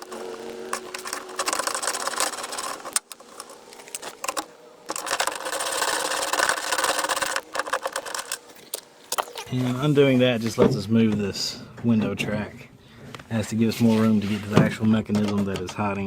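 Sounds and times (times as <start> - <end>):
power tool mechanical chatter: 0.0 - 9.5.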